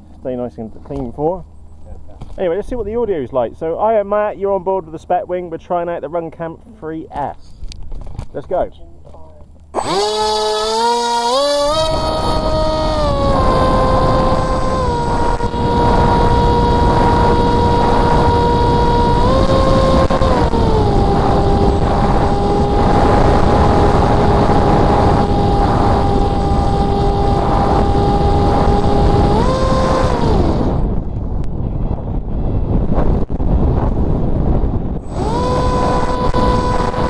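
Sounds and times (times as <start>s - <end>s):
electric motor whine: 9.7s - 31.1s, 34.6s - 37.0s
wind rush on microphone: 9.8s - 37.0s.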